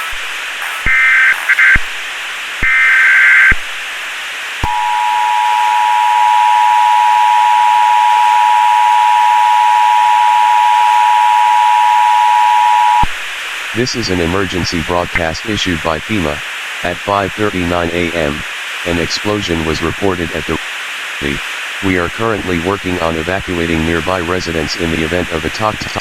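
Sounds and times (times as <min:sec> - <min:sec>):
two-tone attention signal: 0:00.0 - 0:01.9, 0:04.6 - 0:13.0
two-pitch digital data bursts: 0:00.0 - 0:02.0
constant hiss: 0:00.0 - 0:07.4, 0:13.1 - 0:26.0.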